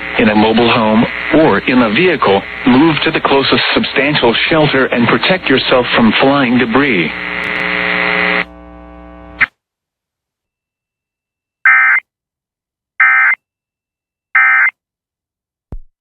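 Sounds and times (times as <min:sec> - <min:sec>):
faint hum: 0:00.0 - 0:09.5
click: 0:07.4 - 0:07.7.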